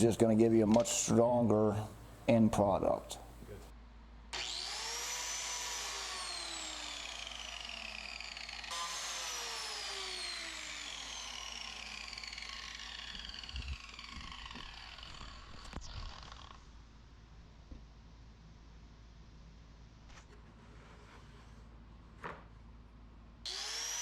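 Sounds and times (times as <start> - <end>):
biscuit joiner motor whining: 4.4 - 16.7, 23.5 - 24.0.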